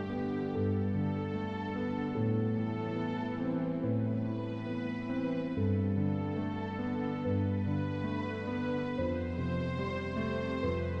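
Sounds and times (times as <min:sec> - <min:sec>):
slow gentle instrumental music: 0:00.0 - 0:11.0.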